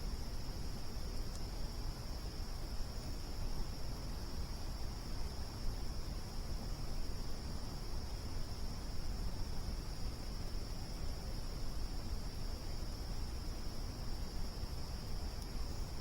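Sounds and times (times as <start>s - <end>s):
crickets trilling: 0.0s - 16.0s
low rumbling background noise: 0.0s - 16.0s
faint tick: 1.2s - 1.5s.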